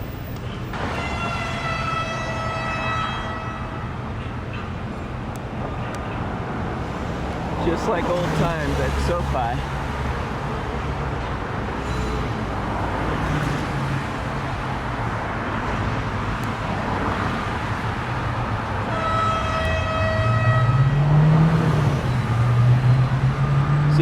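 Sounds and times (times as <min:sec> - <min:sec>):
traffic noise: 0:00.0 - 0:24.0
car horn blast: 0:00.8 - 0:04.1, 0:18.9 - 0:23.0.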